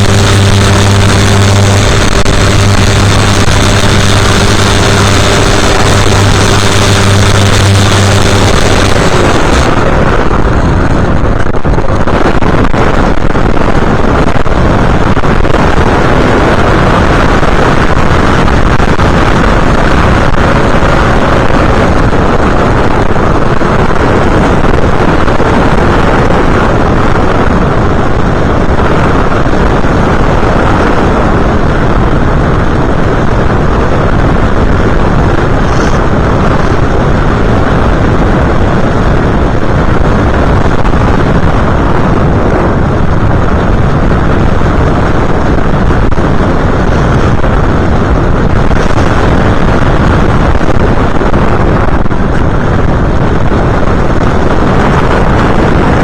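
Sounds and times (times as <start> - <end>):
model aircraft motor and propeller: 0.0 - 11.5, 35.1 - 37.5
wind rushing over microphone: 0.0 - 56.0.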